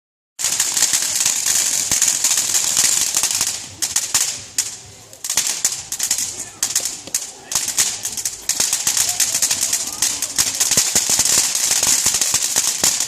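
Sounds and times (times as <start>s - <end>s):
fireworks crackling: 0.4s - 13.0s.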